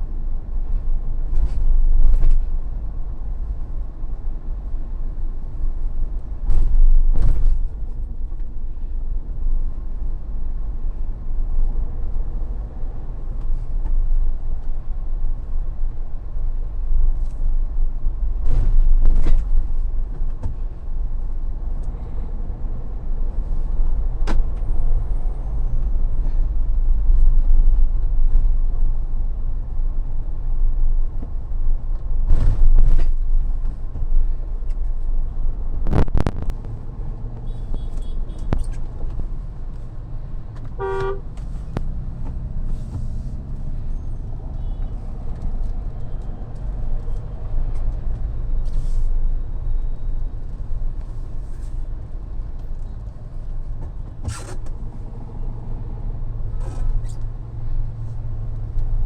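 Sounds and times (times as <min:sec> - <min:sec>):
car engine and road noise: 0:00.0 - 0:59.0
car horn honk: 0:37.4 - 0:38.6, 0:40.8 - 0:41.3.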